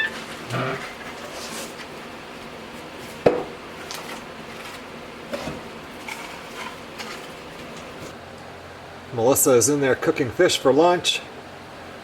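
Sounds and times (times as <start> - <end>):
objects knocking and clattering: 3.1 - 8.2.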